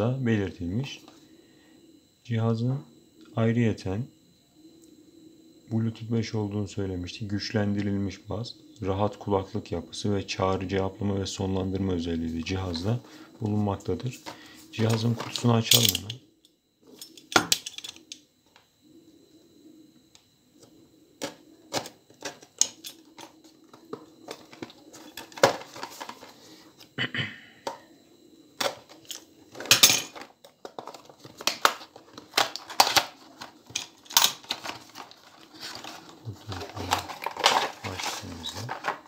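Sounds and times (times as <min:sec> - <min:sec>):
faint steady hum: 0:00.0 - 0:39.0
packaging being opened: 0:30.6 - 0:39.0.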